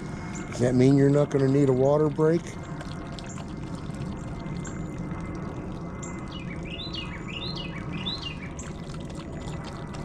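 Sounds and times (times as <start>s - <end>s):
dog lapping water: 0.4s - 10.0s
small bird chirping: 6.0s - 8.7s.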